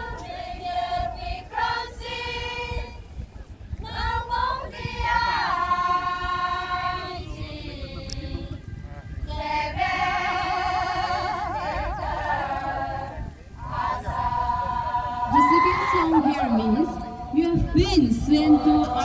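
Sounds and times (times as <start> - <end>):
women singing together: 0.0 - 8.6, 9.3 - 19.0.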